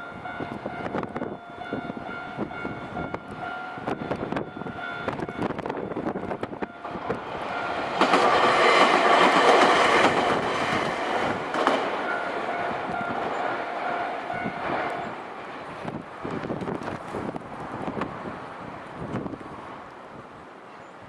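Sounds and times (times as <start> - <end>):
crossing warning bell: 0.0 - 15.4
train wheels clattering: 0.3 - 17.2.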